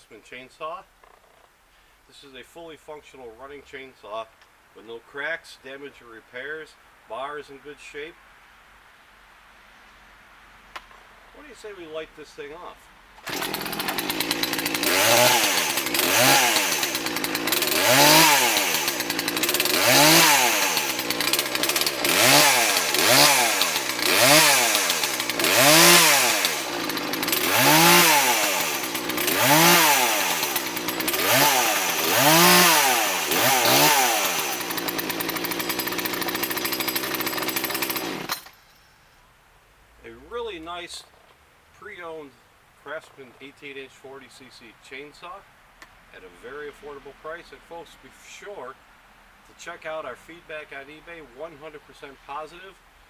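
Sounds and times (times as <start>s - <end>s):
chainsaw engine revving: 13.2s - 38.6s.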